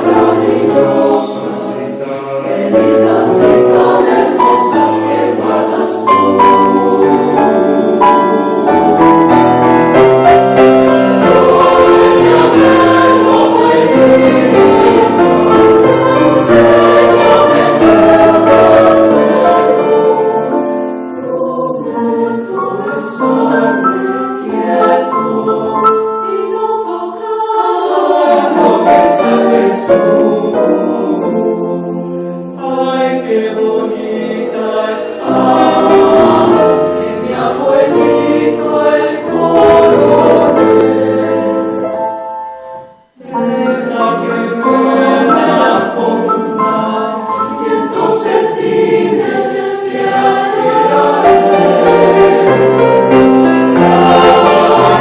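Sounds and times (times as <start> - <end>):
choir singing with instruments: 0.0 - 55.0.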